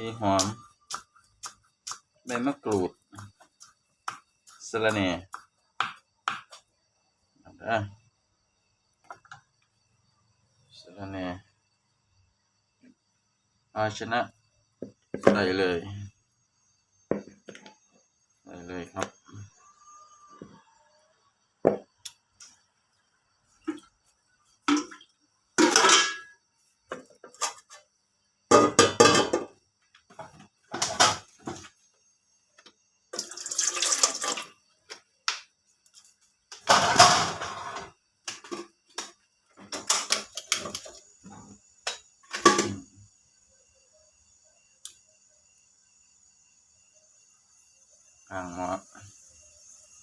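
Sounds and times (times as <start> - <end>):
pots and dishes clattering: 25.6 - 27.7, 28.5 - 29.6, 30.2 - 31.6, 36.6 - 38.7, 39.6 - 42.8
water running and splashing: 33.2 - 34.6.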